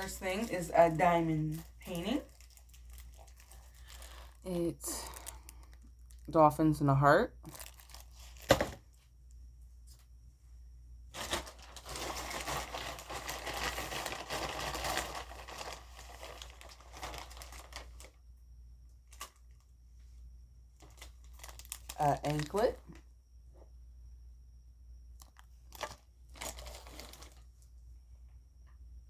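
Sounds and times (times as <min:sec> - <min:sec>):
plastic packaging crinkling: 0:00.0 - 0:06.4, 0:07.4 - 0:09.0, 0:11.1 - 0:18.2, 0:19.0 - 0:19.7, 0:20.8 - 0:23.0, 0:25.2 - 0:27.6.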